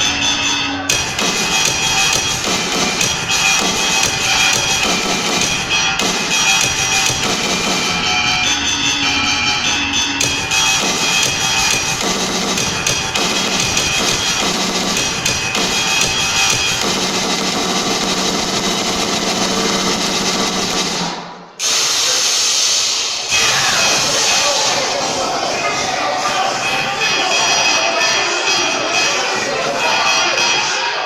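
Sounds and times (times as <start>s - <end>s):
busy sound: 0.0s - 21.7s, 23.3s - 31.0s
music with drums: 0.9s - 9.3s, 10.1s - 21.2s.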